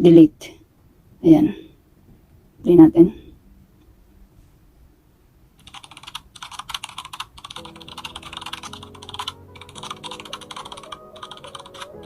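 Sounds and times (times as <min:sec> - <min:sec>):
keyboard typing: 0:05.6 - 0:12.0.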